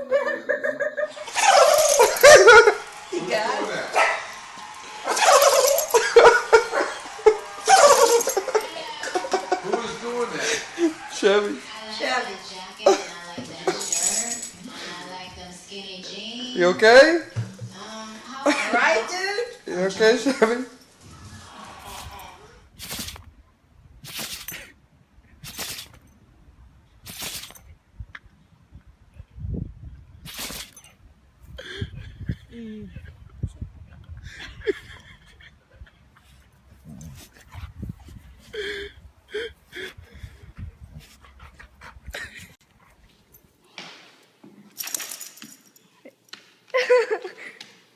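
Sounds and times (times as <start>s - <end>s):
dog sneezing: 1.3s - 2.8s, 5.1s - 6.6s, 7.7s - 8.5s, 22.8s - 23.2s, 24.0s - 24.7s, 25.4s - 26.0s, 27.1s - 27.6s, 30.3s - 30.8s.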